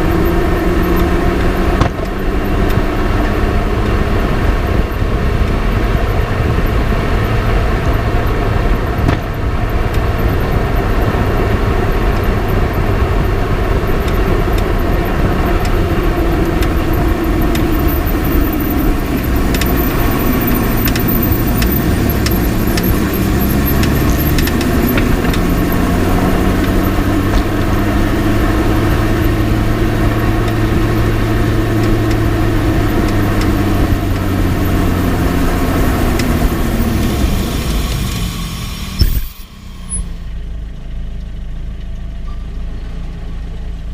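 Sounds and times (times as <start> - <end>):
car engine: 0.0 - 43.9
tyre and road rumble: 0.0 - 43.9
faint sharp suspension clicks: 11.9 - 40.1.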